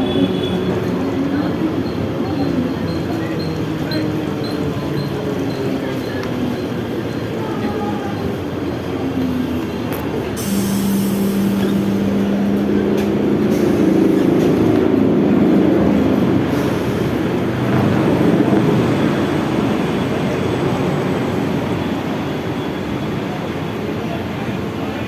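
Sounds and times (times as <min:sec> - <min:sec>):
train rumbling along track: 0:00.0 - 0:25.0.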